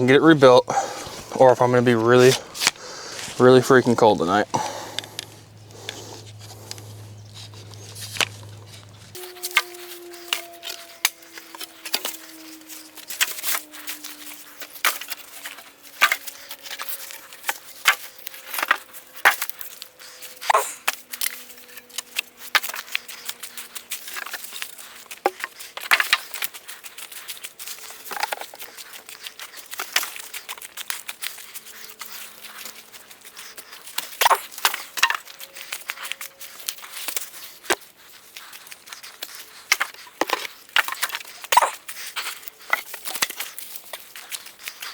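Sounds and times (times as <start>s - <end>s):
sticks cracking and snapping: 2.2s - 3.4s.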